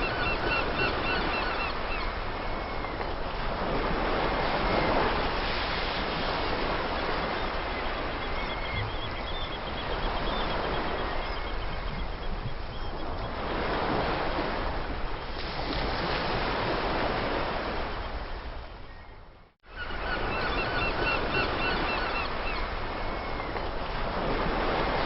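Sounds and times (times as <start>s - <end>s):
seagulls calling: 0.0s - 3.0s, 6.1s - 14.2s, 18.9s - 23.6s
sea surf washing: 0.0s - 18.3s.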